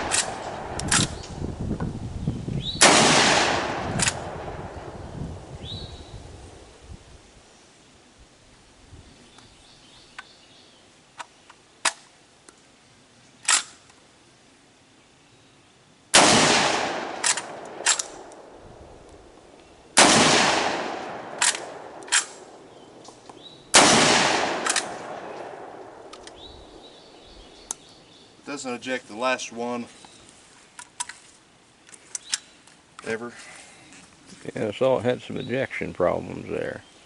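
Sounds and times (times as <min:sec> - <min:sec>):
shotgun shots echoing: 0:00.0 - 0:01.2, 0:02.8 - 0:04.9, 0:16.1 - 0:18.6, 0:20.0 - 0:22.6, 0:23.7 - 0:27.2.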